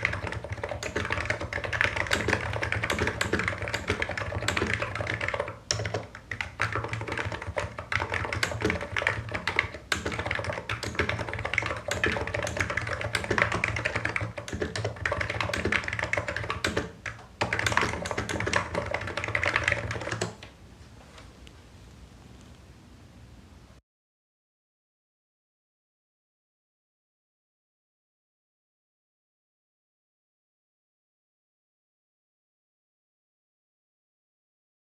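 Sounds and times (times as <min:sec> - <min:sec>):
fast keyboard typing: 0:00.0 - 0:20.4.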